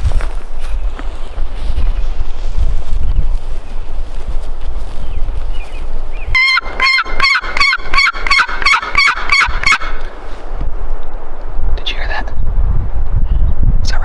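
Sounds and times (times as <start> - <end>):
wind rumble on microphone: 0.0 - 14.0
turkey yelps: 6.4 - 10.0.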